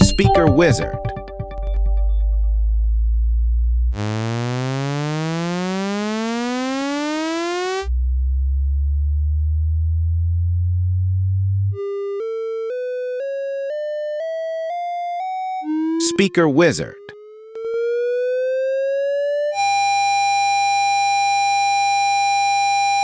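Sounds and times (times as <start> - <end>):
deep bass hum: 0.9 - 4.7, 7.9 - 11.8.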